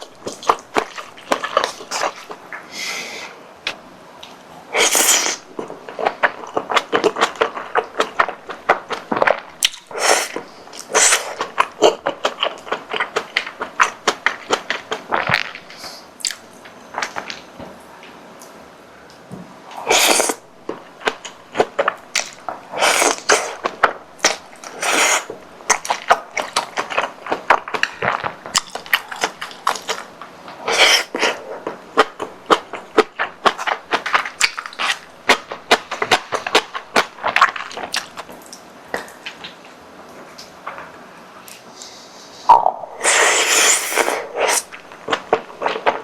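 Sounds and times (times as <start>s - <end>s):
wet chewing: 0.0s - 2.5s, 4.2s - 17.4s, 19.8s - 39.6s, 42.5s - 46.0s
mouth clicks: 42.5s - 44.8s.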